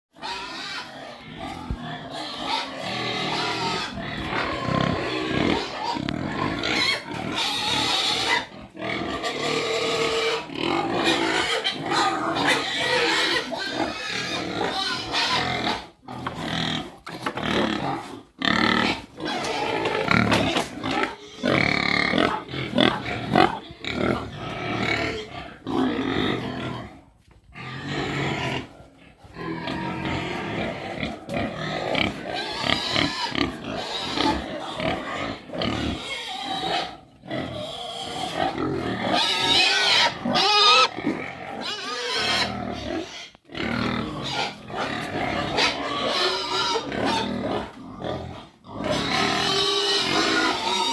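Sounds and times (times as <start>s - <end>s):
pigs squealing and grunting: 0.2s - 50.9s.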